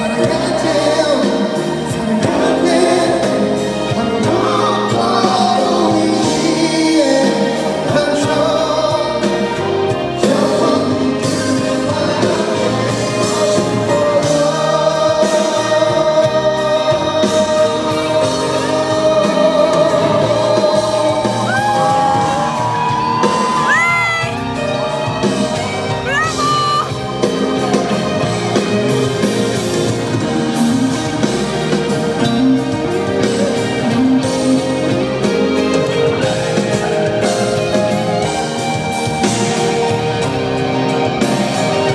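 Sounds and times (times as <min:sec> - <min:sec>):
choir-like backing vocals: 0:00.0 - 0:26.3
band playing pop ballad: 0:00.0 - 0:41.9
lead vocal singing: 0:00.0 - 0:41.9.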